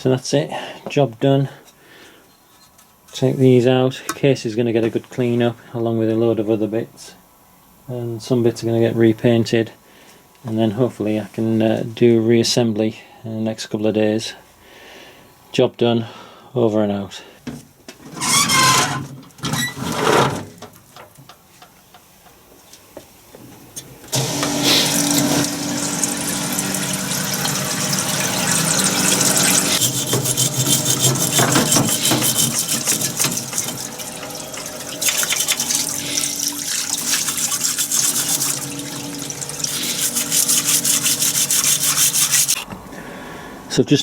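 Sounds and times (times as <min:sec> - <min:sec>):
washer pump motor humming: 0:24.1 - 0:42.6
water spraying onto metal: 0:24.2 - 0:42.6.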